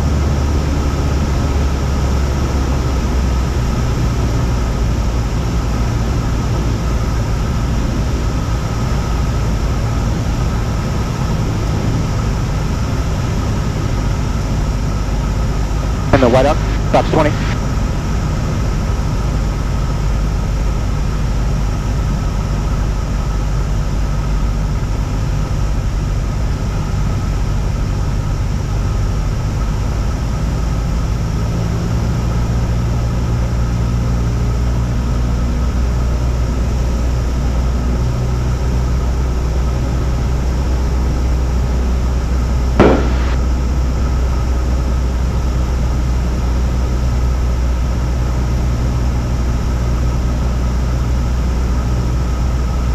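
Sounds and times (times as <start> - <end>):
propeller plane engine droning: 0.0 - 52.9
sharp knock: 42.8 - 43.4.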